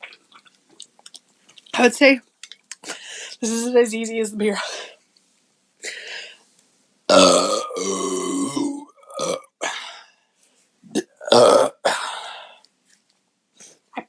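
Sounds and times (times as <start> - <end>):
woman burping: 7.1 - 9.8, 10.9 - 12.2.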